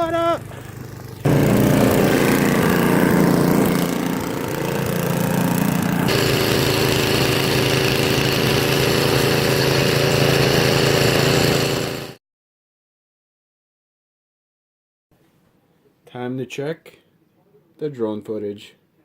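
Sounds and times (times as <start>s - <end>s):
small motor running: 0.2s - 12.2s.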